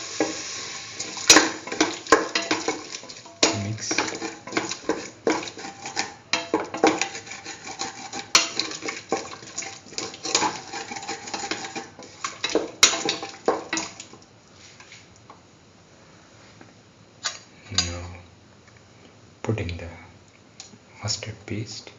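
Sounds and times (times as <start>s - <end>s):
utensil scraping in a pan: 0.0s - 15.1s.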